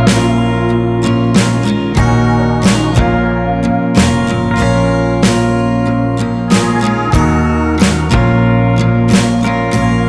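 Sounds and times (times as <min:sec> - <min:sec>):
strummed guitar music with beat: 0:00.0 - 0:10.0.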